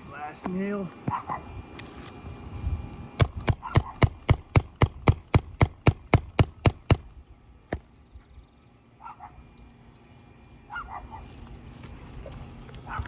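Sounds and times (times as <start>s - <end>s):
hammer striking steel: 3.2s - 7.1s.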